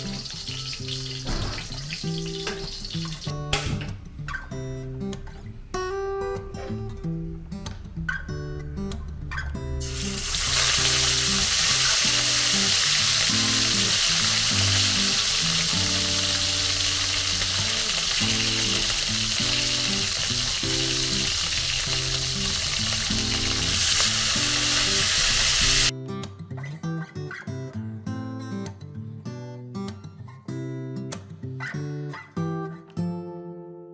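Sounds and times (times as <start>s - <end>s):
fish sizzling in hot oil: 0.0s - 3.4s, 9.8s - 25.9s
acoustic guitar music: 0.0s - 33.9s.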